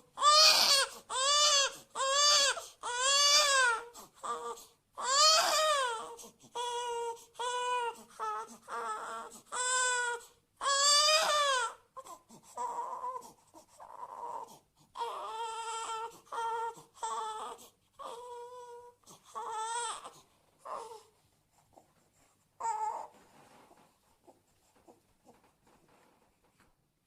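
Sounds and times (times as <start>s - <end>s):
baby crying: 0.1s - 13.2s, 13.8s - 21.1s, 22.6s - 23.1s
baby whimpering: 0.1s - 21.1s, 22.6s - 23.2s.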